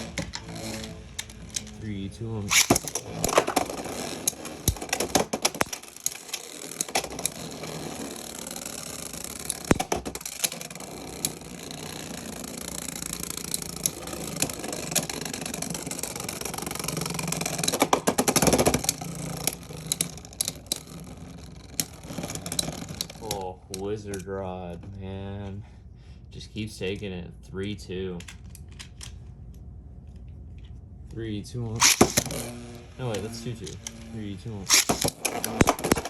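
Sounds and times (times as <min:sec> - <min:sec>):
spinning tops whirring: 0:00.0 - 0:23.5, 0:31.7 - 0:36.0
sharp plastic clacks: 0:02.5 - 0:24.3, 0:31.8 - 0:32.5, 0:34.7 - 0:36.0.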